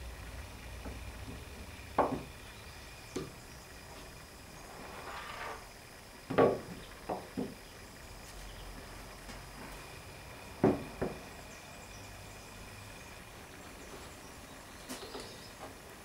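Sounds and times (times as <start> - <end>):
sharp knocks: 2.0 - 2.4, 6.3 - 7.6, 10.6 - 11.2.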